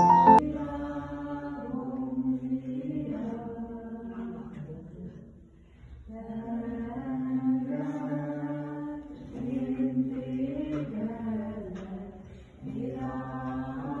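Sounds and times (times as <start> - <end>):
voices singing in harmony: 0.0 - 4.0, 6.2 - 14.0.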